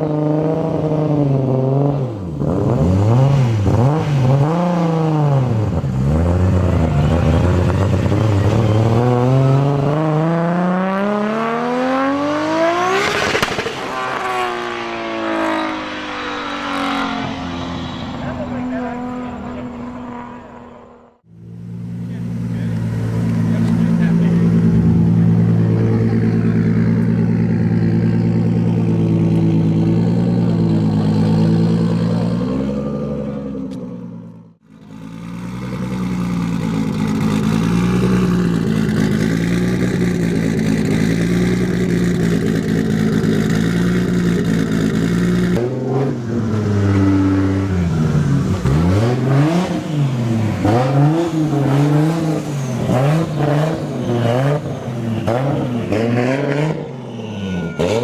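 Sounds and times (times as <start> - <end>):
car engine running: 13.0 - 45.6
engine revving in blips: 22.1 - 58.0.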